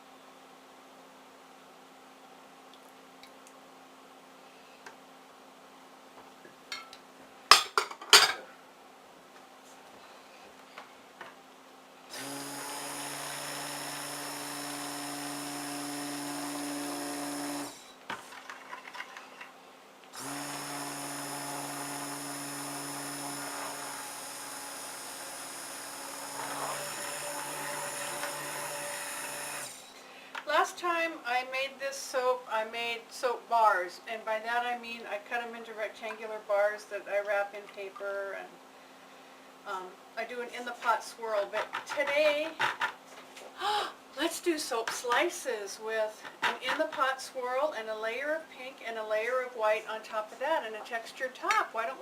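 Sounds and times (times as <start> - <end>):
stick blender motor running: 12.1 - 17.9, 20.1 - 29.9.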